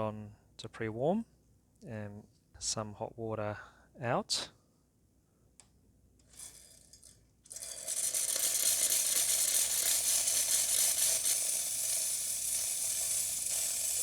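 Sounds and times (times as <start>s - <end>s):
steam wand hissing: 7.7s - 14.0s.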